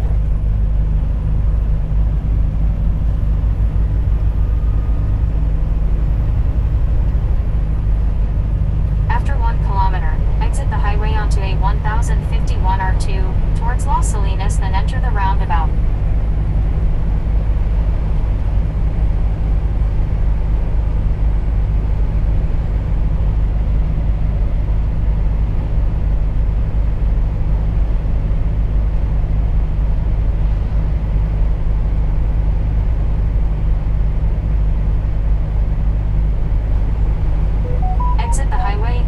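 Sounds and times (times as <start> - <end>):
truck diesel engine droning: 0.0 - 24.6.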